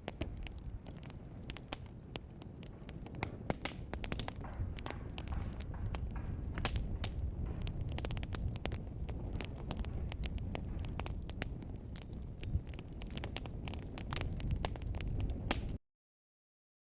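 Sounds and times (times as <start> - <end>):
wood fire crackling: 0.0 - 15.8.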